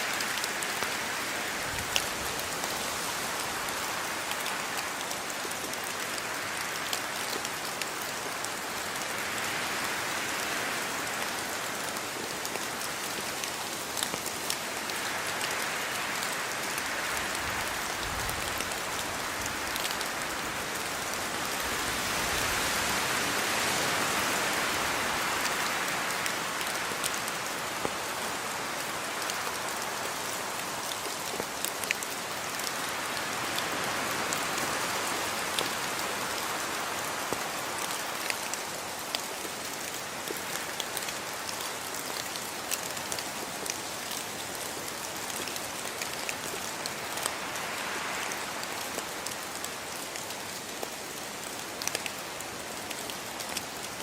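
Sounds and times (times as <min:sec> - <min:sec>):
raindrops ticking on surface: 0:00.0 - 0:21.8, 0:24.5 - 0:54.0
steady rainfall hiss: 0:00.0 - 0:54.0.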